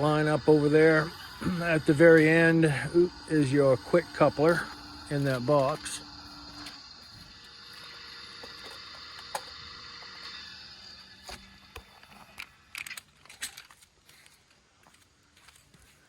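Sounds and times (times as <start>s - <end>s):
mechanical hum with held tones: 0.0s - 16.0s.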